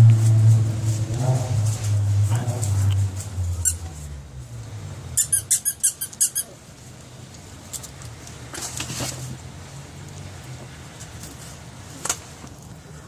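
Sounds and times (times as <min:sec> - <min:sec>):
squeaky dog toy squeaks: 0:03.6 - 0:03.9, 0:05.2 - 0:06.6.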